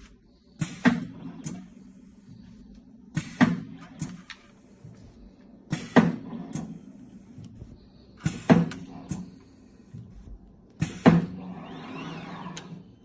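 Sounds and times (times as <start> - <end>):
steady low machine hum: 0.0 - 13.0.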